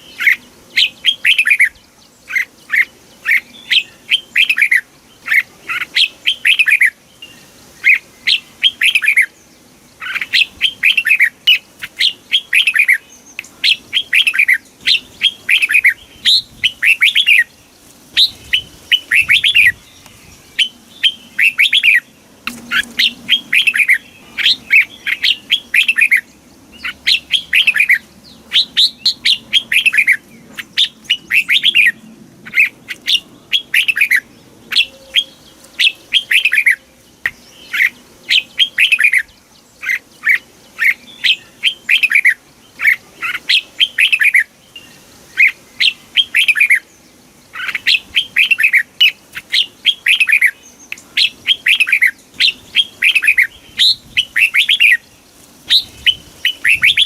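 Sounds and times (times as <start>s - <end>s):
bird singing whistled notes: 0.0s - 17.6s, 18.2s - 57.0s.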